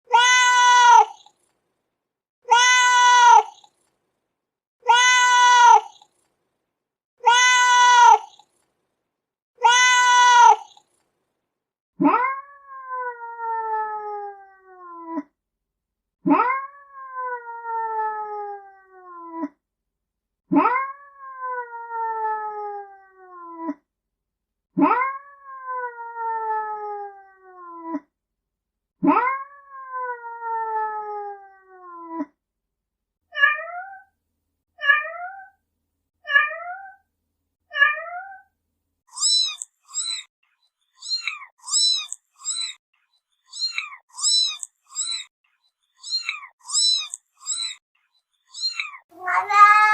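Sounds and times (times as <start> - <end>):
cat meowing: 0.1 - 1.3, 2.5 - 3.7, 4.8 - 6.1, 7.2 - 8.4, 9.6 - 10.8, 33.3 - 34.1, 34.8 - 35.6, 36.2 - 37.0, 37.7 - 38.5, 39.1 - 40.3, 43.5 - 45.3, 46.0 - 47.8, 48.6 - 49.9
high-pitched squeaky calls: 39.1 - 40.3, 40.9 - 45.3, 45.9 - 49.9.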